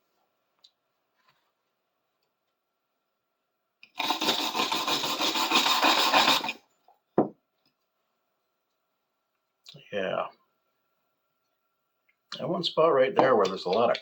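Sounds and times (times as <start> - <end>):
sandpaper rubbing on metal: 4.0 - 6.6.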